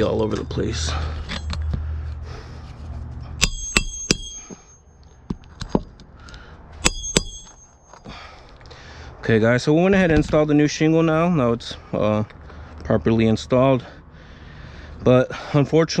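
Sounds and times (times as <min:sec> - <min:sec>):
hammer striking nail: 0:03.4 - 0:05.8, 0:06.8 - 0:07.6.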